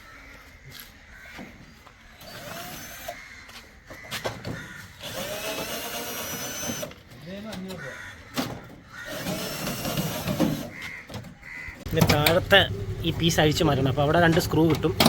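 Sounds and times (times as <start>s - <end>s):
power drill running: 2.2s - 3.2s, 5.0s - 7.0s, 9.0s - 10.7s
parts clicking and knocking: 3.8s - 13.3s, 13.9s - 15.0s.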